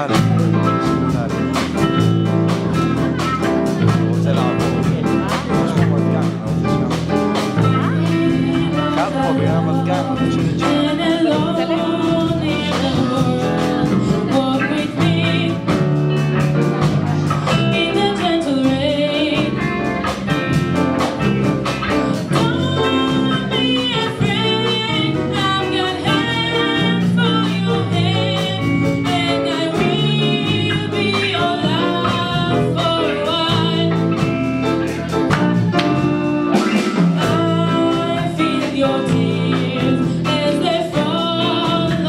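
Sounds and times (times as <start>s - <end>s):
guitar accompaniment: 0.0s - 42.0s
person singing with vibrato: 7.6s - 16.2s, 21.8s - 42.0s.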